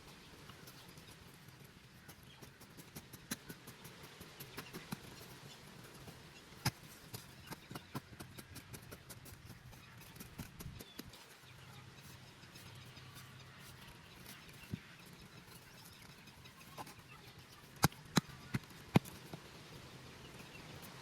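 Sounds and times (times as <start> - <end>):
sharp clicks and taps: 6.6 - 11.2, 16.7 - 19.4.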